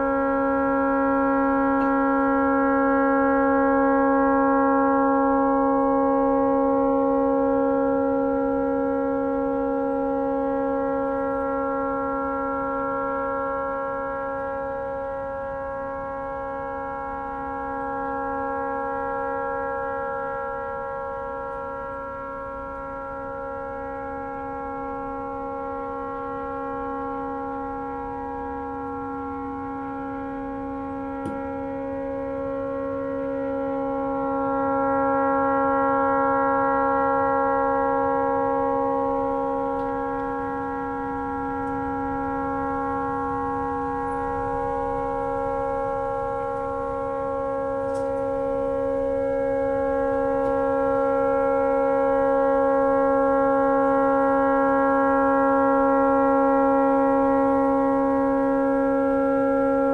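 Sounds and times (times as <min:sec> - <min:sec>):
tugboat horn blast: 0:26.6 - 0:59.9.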